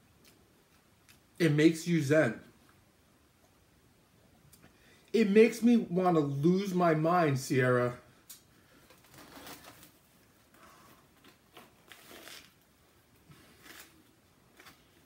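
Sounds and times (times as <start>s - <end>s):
soft chewing and crunching: 0.0s - 1.4s, 8.2s - 15.0s.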